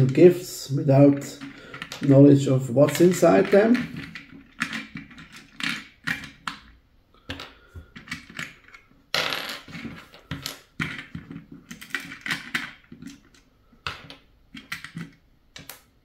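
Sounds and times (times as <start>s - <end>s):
plastic pieces scraping: 0.0s - 15.9s
plastic pieces clicking and clattering: 1.0s - 16.0s.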